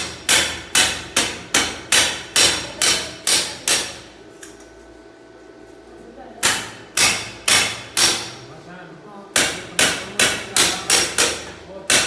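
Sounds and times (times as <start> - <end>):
hammer striking metal: 0.0 - 4.1, 6.4 - 8.4, 9.4 - 12.0.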